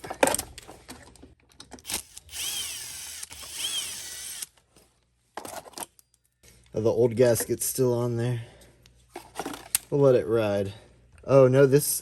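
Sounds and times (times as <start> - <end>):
tools and parts rattling: 0.0 - 2.4, 5.4 - 6.3, 9.1 - 9.9
cordless drill whining: 1.8 - 4.5.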